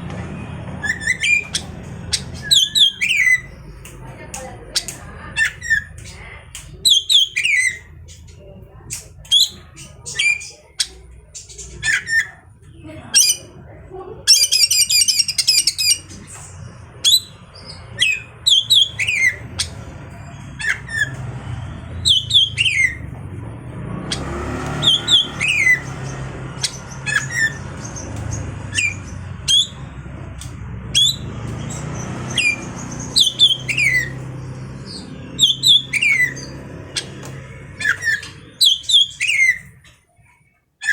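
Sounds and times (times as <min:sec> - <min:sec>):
bird song with sharp notes: 0:00.1 - 0:13.6, 0:14.2 - 0:40.9
fast dense bird trill: 0:00.4 - 0:03.8, 0:16.9 - 0:23.2, 0:23.8 - 0:39.9.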